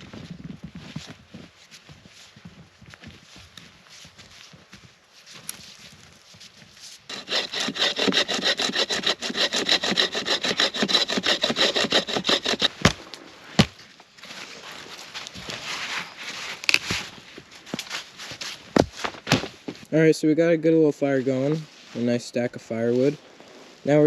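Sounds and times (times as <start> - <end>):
saw cutting through wood: 7.1 - 13.0.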